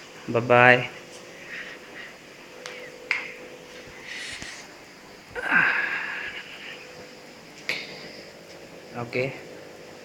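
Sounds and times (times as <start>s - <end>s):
faint steady hum: 0.0s - 10.0s
person exhaling breathily: 5.4s - 6.9s.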